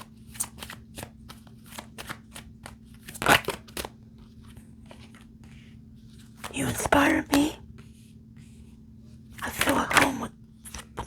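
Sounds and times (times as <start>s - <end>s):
card slap: 0.0s - 4.0s, 9.4s - 11.0s
cards being shuffled: 0.0s - 7.9s, 9.3s - 11.0s
faint steady hum: 0.0s - 11.0s.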